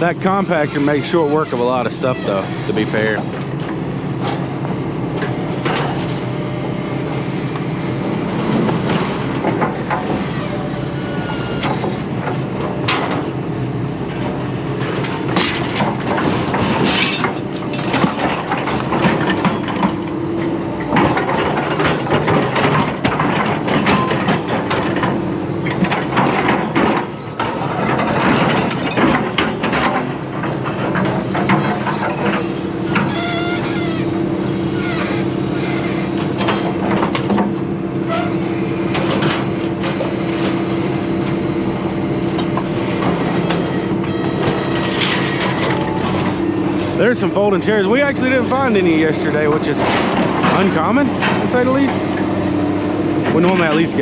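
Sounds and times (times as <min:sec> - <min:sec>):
scrap metal clanking and rattling: 0:14.2 - 0:20.0, 0:20.8 - 0:33.1, 0:44.4 - 0:52.5, 0:53.2 - 0:54.0.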